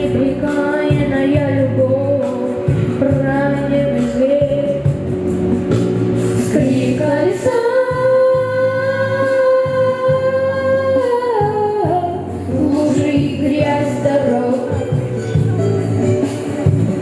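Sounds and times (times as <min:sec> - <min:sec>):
child singing: 0:00.0 - 0:04.8, 0:06.5 - 0:15.0
backing music: 0:00.0 - 0:17.0.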